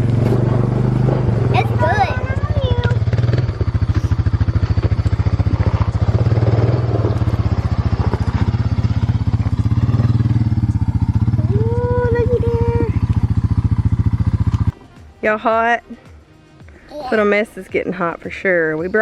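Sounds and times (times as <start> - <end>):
small engine puttering: 0.0 - 14.7.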